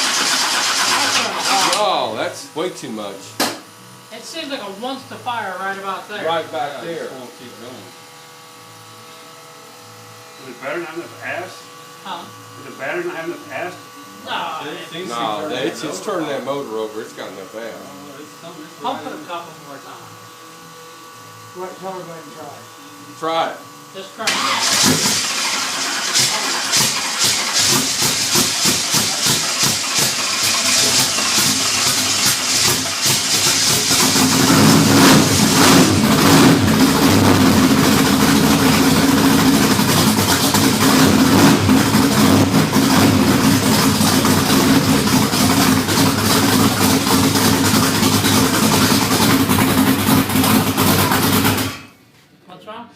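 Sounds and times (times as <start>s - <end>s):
starter cranking engine: 0.0s - 2.0s, 24.3s - 51.9s
car engine running steadily: 24.6s - 51.8s.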